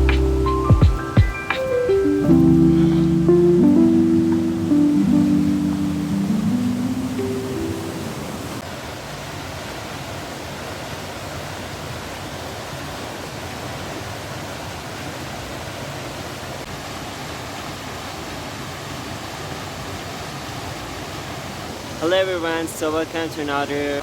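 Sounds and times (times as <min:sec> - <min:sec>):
acoustic guitar music: 0:00.0 - 0:08.6
river rushing: 0:00.4 - 0:22.4.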